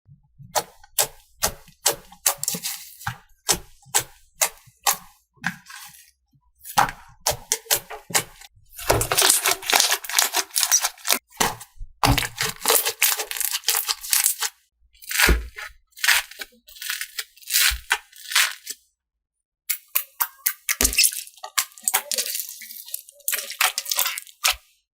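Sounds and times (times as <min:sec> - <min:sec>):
slime squished by hand: 0:06.7 - 0:18.8, 0:20.0 - 0:24.7
sticky clicks and crackles: 0:07.3 - 0:11.3, 0:12.0 - 0:15.4, 0:19.7 - 0:24.7.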